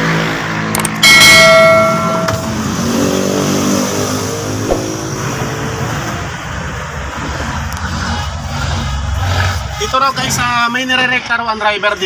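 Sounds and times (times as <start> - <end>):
diesel truck engine revving: 1.8 - 10.6.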